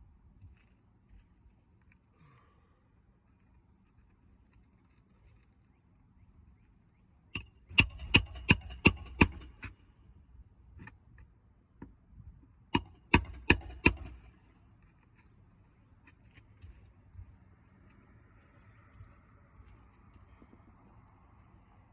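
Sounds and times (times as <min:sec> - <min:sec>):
hammer tapping nails: 0:07.4 - 0:09.7, 0:12.8 - 0:14.4.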